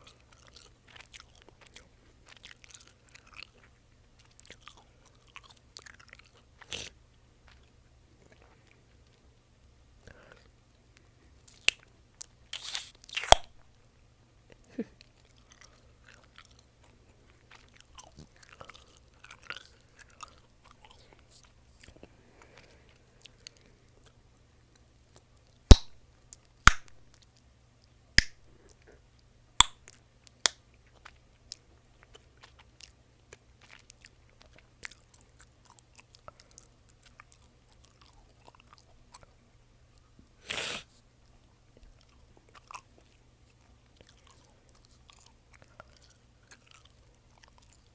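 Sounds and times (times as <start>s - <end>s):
chewing gum mouth sounds: 0.0s - 9.3s, 14.5s - 29.0s, 29.6s - 40.4s, 41.2s - 47.9s
gum pops and snaps: 11.5s - 11.9s, 12.5s - 13.6s, 25.7s - 26.0s, 26.6s - 27.3s, 28.2s - 28.5s, 29.6s - 30.6s.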